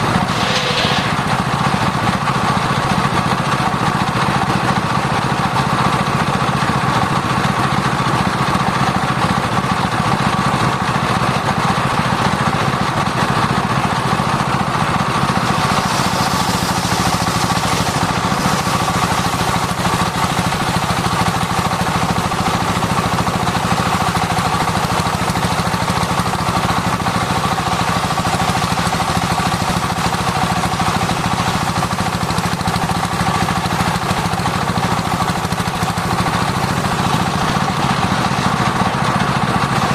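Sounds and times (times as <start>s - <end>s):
circular saw whine: 0.0s - 2.2s, 15.2s - 20.2s.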